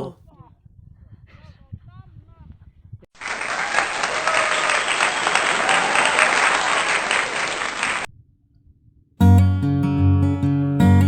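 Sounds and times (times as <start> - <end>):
crowd applauding and cheering: 3.2 - 8.1
strummed acoustic guitar music: 9.2 - 11.0.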